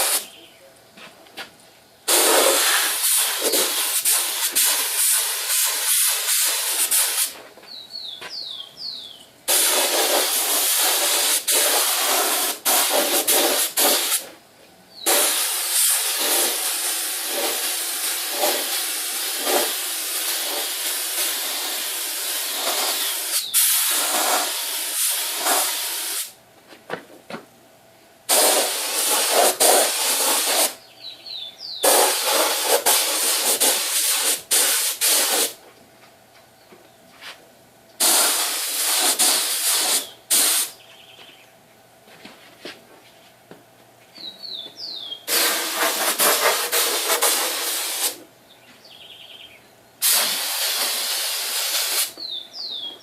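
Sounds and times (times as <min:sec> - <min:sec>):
paint spray gun hissing: 0:00.0 - 0:00.3, 0:02.1 - 0:07.4, 0:09.5 - 0:14.3, 0:15.1 - 0:26.4, 0:28.3 - 0:30.8, 0:31.8 - 0:35.6, 0:38.0 - 0:40.8, 0:45.3 - 0:48.2, 0:50.0 - 0:52.2.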